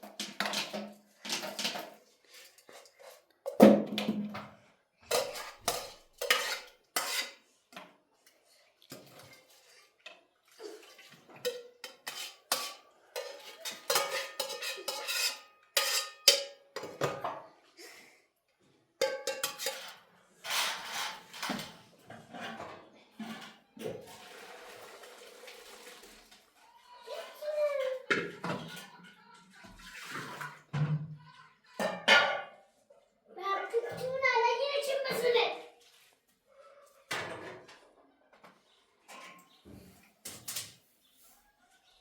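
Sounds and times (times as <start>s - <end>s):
dishes and pots clattering: 0.0s - 17.6s, 19.0s - 24.9s, 27.1s - 32.8s, 37.1s - 40.8s.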